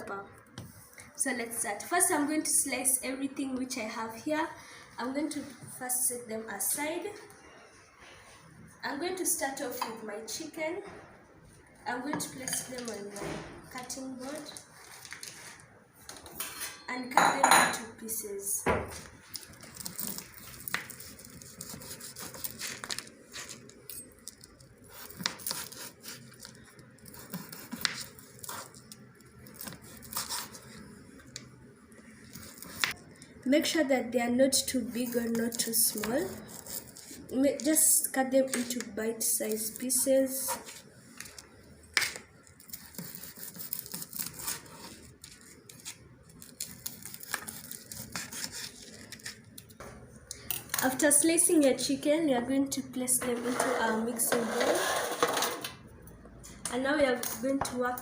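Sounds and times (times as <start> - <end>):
knife slicing and scraping: 19.3 - 30.9, 35.0 - 37.3, 42.0 - 49.4
knife cutting on cutting board: 19.9 - 22.8, 42.7 - 45.1, 45.8 - 49.4.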